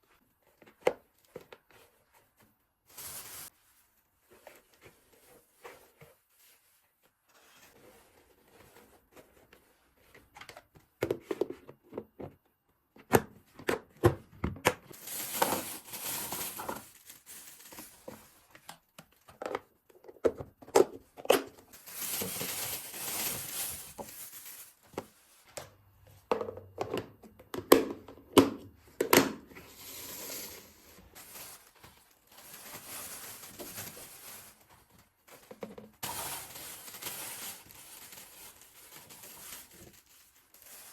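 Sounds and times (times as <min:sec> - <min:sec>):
packaging rustling and crinkling: 0:02.9 - 0:03.6, 0:14.9 - 0:18.7, 0:21.7 - 0:25.5, 0:30.3 - 0:40.9.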